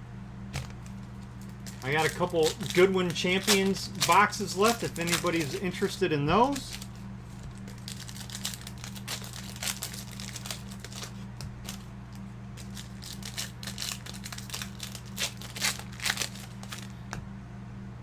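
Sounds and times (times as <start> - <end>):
low electrical hum: 0.0 - 18.0
plastic wrapping crinkling and tearing: 0.6 - 11.9, 12.6 - 17.1.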